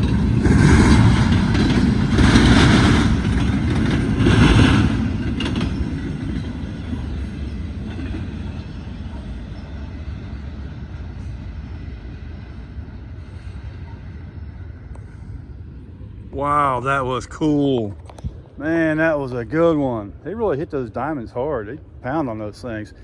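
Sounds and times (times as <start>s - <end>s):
train wheels knocking over rails: 0.0s - 11.2s
train low rumble: 0.0s - 23.0s.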